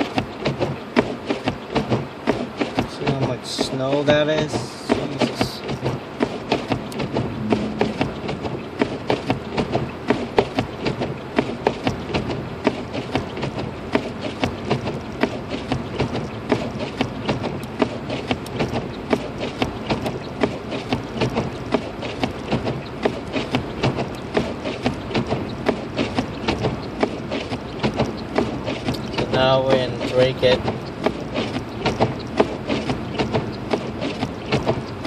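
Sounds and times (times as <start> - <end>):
low road rumble: 0.0 - 35.0
sharp clicks and ticks: 14.4 - 35.0.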